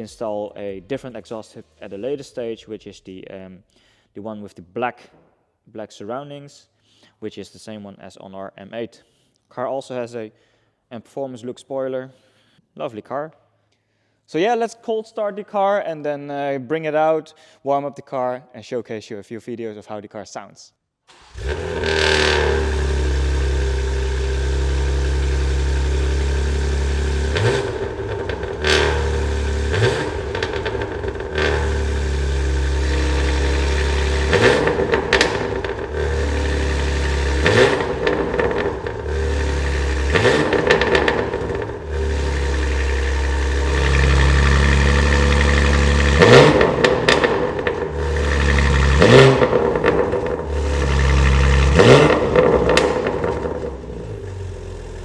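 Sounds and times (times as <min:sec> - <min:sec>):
car engine idling: 0:21.2 - 0:55.0
engine throttle blips: 0:21.2 - 0:55.0.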